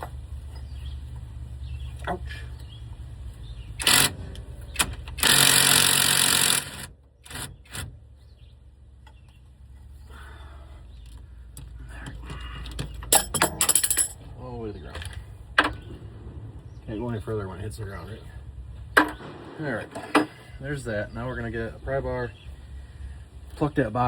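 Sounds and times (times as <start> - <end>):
low steady hum: 0.0 - 24.0
metal clicks and knocks: 11.0 - 14.3, 18.9 - 20.4.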